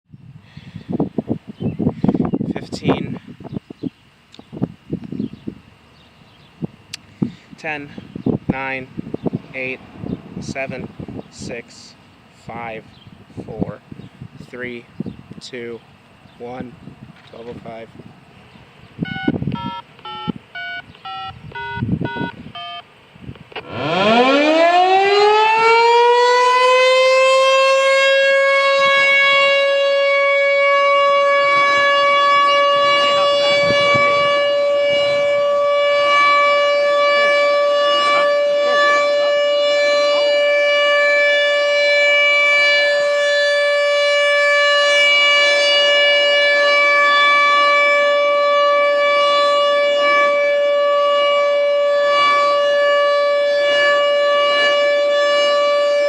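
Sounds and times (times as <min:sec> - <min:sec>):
warning siren wailing: 0:18.9 - 0:22.9, 0:23.5 - 0:56.0.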